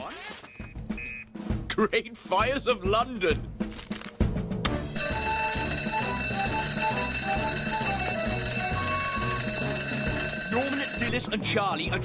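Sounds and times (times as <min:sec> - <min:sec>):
cartoon theme music: 0:04.9 - 0:11.2
electric alarm bell ringing: 0:04.9 - 0:11.3.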